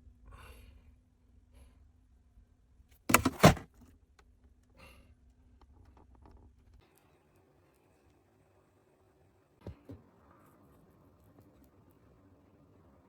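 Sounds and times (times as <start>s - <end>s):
hard objects clattering: 3.1s - 3.6s
faint handling noises: 3.1s - 3.7s.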